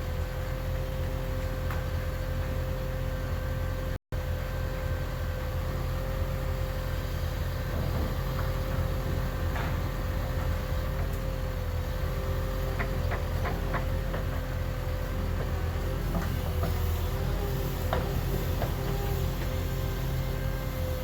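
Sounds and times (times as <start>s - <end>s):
heavy equipment engine running: 0.0s - 21.0s.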